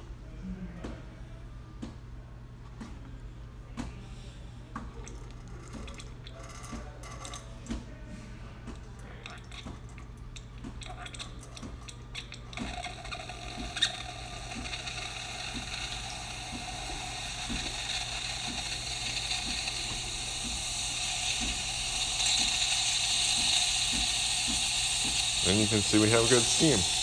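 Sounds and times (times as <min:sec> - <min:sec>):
espresso machine pump clicking: 0:04.8 - 0:07.8, 0:10.6 - 0:27.0
steam hissing: 0:12.6 - 0:27.0.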